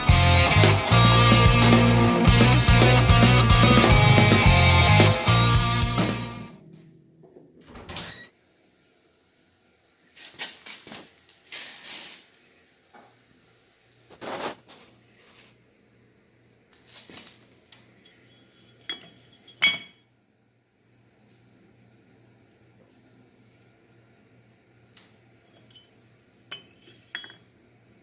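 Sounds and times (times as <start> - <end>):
faint background hum: 6.5 - 28.0
ringing metal clink: 18.0 - 20.6, 25.5 - 27.5.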